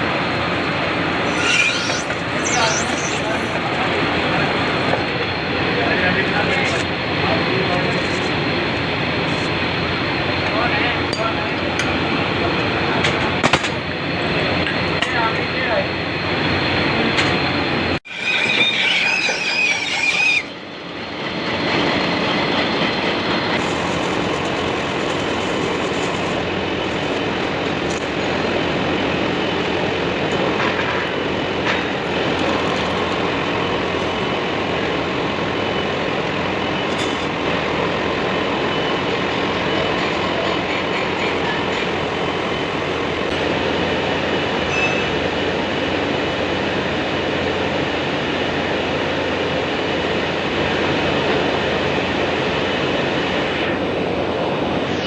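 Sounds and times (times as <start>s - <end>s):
machinery squeal: 0.0s - 5.1s, 18.1s - 20.8s.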